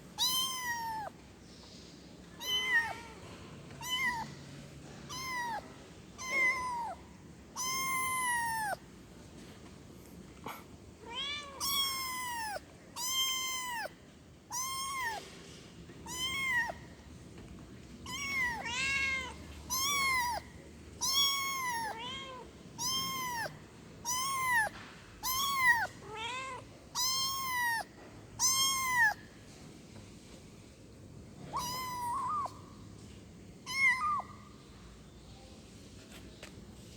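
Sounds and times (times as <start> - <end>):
kitten meowing: 0.2 - 1.1, 2.4 - 3.2, 3.8 - 4.3, 5.1 - 7.0, 7.6 - 8.8, 11.0 - 13.9, 14.5 - 15.2, 16.0 - 16.8, 18.0 - 29.2, 31.5 - 32.6, 33.6 - 34.4.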